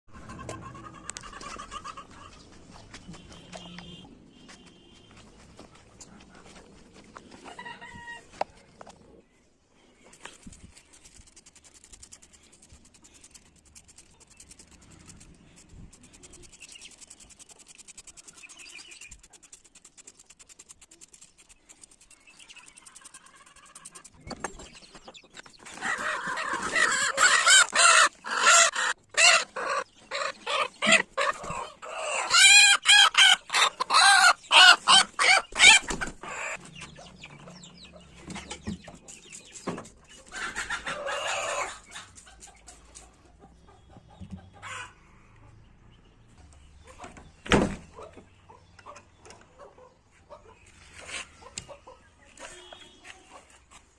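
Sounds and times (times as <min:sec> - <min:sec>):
chicken clucking and squawking: 0:00.1 - 0:02.4, 0:22.6 - 0:24.2, 0:25.0 - 0:45.6, 0:47.9 - 0:53.6.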